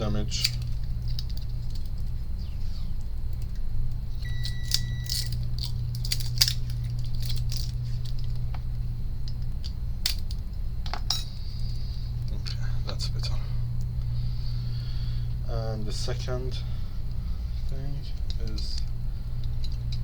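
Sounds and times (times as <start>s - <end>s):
steady low hum: 0.0s - 20.0s
short beep: 4.2s - 5.1s
covering crinkling and clicking: 4.2s - 8.7s.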